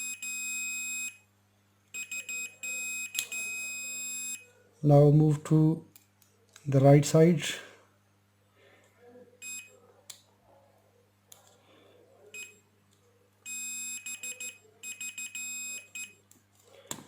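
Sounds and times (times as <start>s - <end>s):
multimeter continuity beeping: 0.0s - 1.2s, 2.0s - 4.4s, 9.4s - 9.7s, 12.4s - 12.6s, 13.5s - 16.2s.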